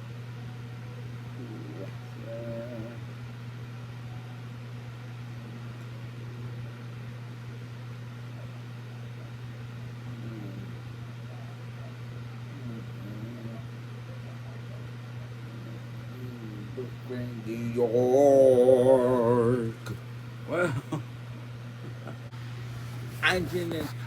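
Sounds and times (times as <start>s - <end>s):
steady low hum: 0.0s - 24.0s
faint voice: 8.4s - 21.0s, 23.2s - 24.0s.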